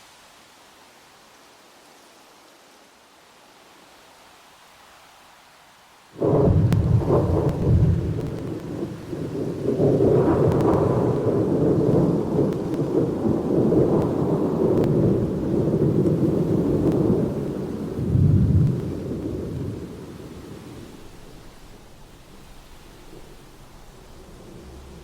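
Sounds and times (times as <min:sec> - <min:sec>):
rain: 0:00.0 - 0:25.0
thunder rumbling: 0:06.2 - 0:25.0.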